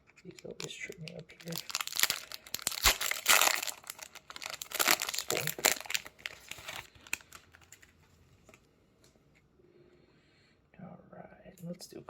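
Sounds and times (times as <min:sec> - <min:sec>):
foil wrapper crinkling: 0:00.0 - 0:08.0
faint handling of cards: 0:00.0 - 0:09.5.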